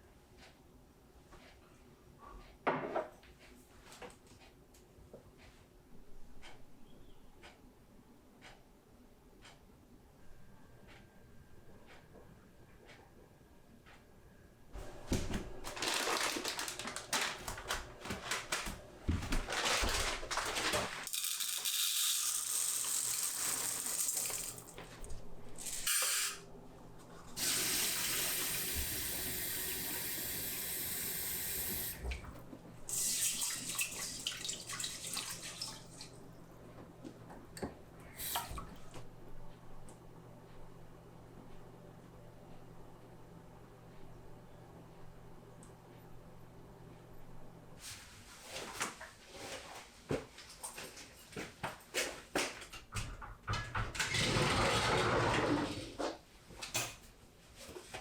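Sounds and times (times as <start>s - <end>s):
tap water running into sink: 21.2s - 24.8s, 27.4s - 32.2s, 32.9s - 36.1s.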